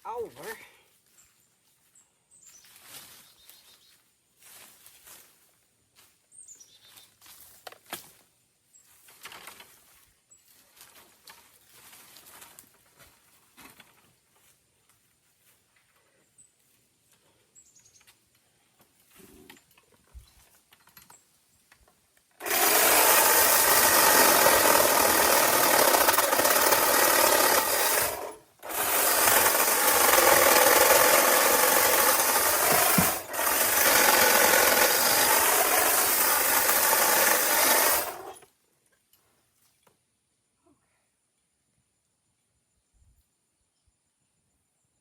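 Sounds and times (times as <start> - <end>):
electric trimmer running: 22.4 - 38.4.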